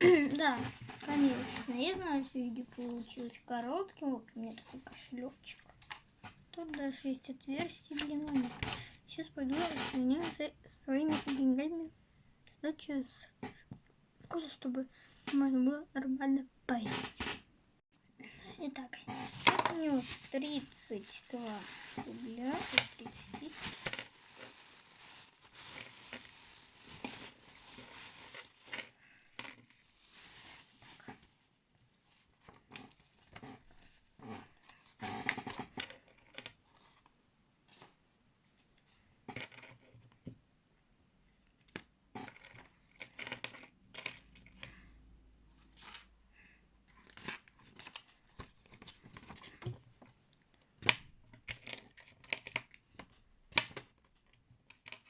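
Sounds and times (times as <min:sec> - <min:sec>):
paper rustling and crinkling: 0:00.1 - 0:03.4, 0:19.1 - 0:28.9, 0:29.7 - 0:31.4.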